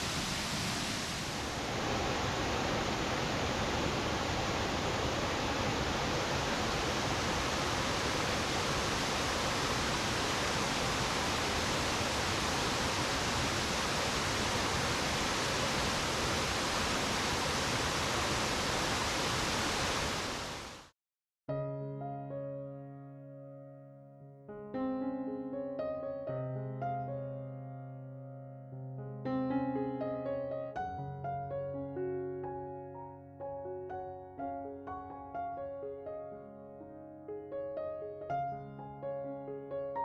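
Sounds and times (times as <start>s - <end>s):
waterfall rushing: 0.0s - 20.9s.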